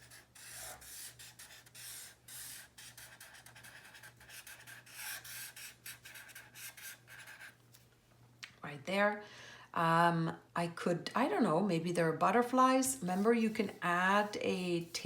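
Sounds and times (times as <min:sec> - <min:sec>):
pencil scratching on paper: 0:00.0 - 0:07.6
faint steady hum: 0:00.0 - 0:15.0.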